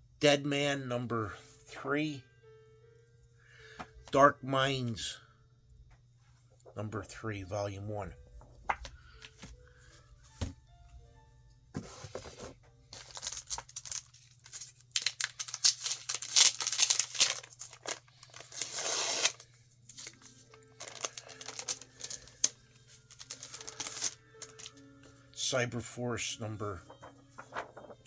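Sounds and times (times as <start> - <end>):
plastic and paper crinkling: 11.8 - 24.8, 26.6 - 28.0.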